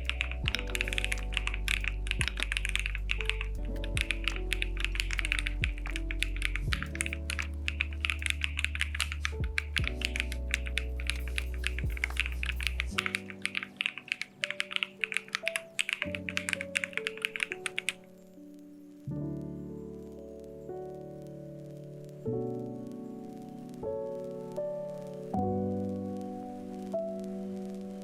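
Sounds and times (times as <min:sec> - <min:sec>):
background music: 0:00.0 - 0:28.0
mechanical keyboard typing: 0:13.0 - 0:18.0.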